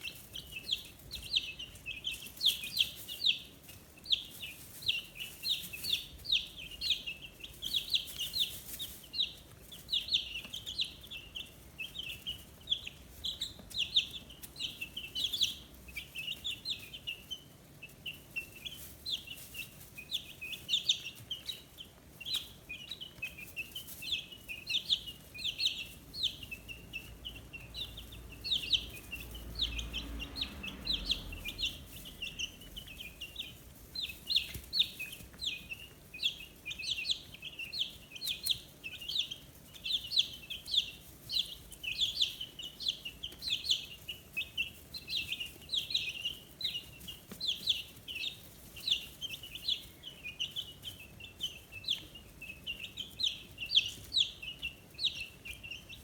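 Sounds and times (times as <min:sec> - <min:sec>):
chicks peeping: 0:00.0 - 0:56.0
faint low rumble: 0:24.8 - 0:38.0.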